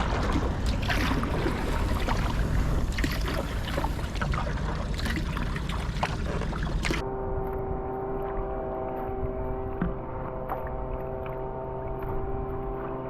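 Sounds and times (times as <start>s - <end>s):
paddle splashing in water: 0.0s - 7.0s
water dripping: 0.0s - 7.0s
wind rumble on microphone: 0.0s - 13.0s.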